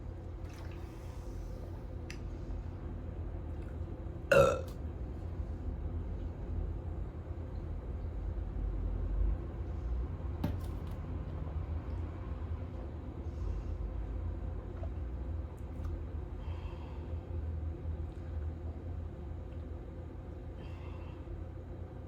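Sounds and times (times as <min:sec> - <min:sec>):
person burping: 0:04.3 - 0:04.7.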